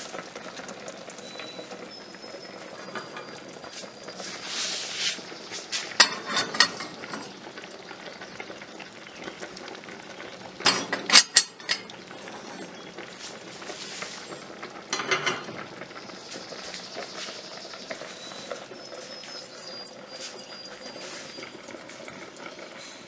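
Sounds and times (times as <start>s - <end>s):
hard objects clinking and clattering: 6.0s - 7.3s, 10.6s - 12.0s.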